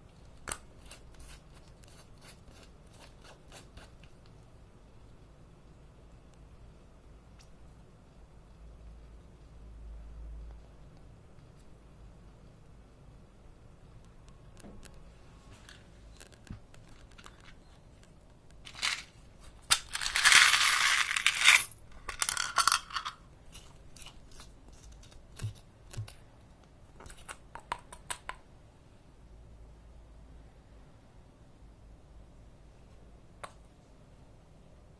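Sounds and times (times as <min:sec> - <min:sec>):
crackling and rattling: 0:14.0 - 0:26.2.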